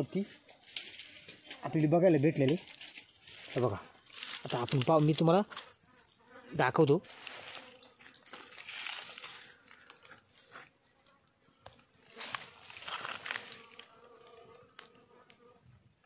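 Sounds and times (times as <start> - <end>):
dry leaves rustling and crunching: 2.5 - 5.2, 7.0 - 9.7, 12.1 - 13.8.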